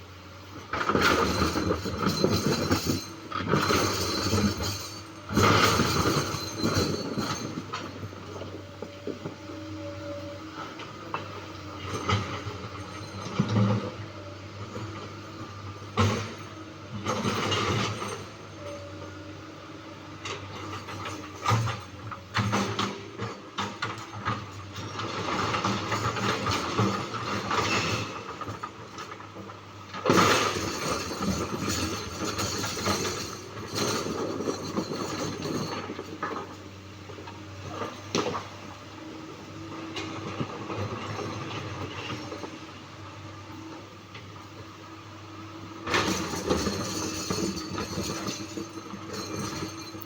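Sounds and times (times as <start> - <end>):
excavator diesel engine under load: 0.0 - 50.0.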